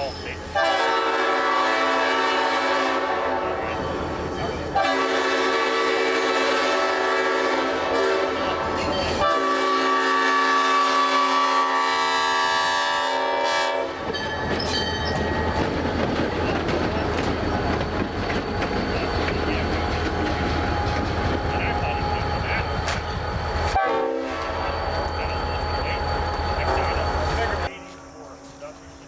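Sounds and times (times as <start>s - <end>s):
locomotive air horn chord: 0.6s - 3.8s, 4.8s - 14.1s, 23.7s - 26.0s
locomotive rumble: 13.9s - 29.0s
wheels clattering on rails: 14.1s - 23.7s.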